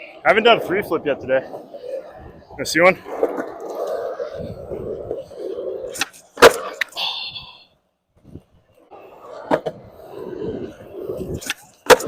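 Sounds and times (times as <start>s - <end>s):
skateboard wheels rolling on concrete: 0.0s - 12.0s
skateboard tail snapping on concrete: 5.9s - 6.9s, 11.3s - 12.0s.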